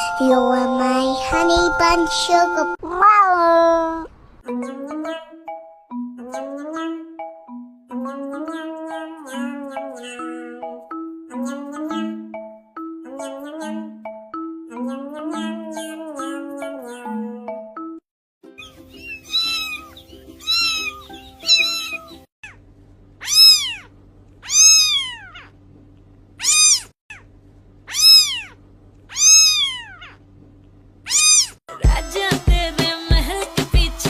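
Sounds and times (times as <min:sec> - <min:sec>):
music: 0:00.0 - 0:02.8, 0:04.5 - 0:15.5, 0:17.4 - 0:22.3, 0:31.7 - 0:34.0
cat meowing: 0:19.2 - 0:22.1, 0:23.2 - 0:25.5, 0:26.4 - 0:26.9, 0:27.9 - 0:30.2, 0:31.1 - 0:31.6.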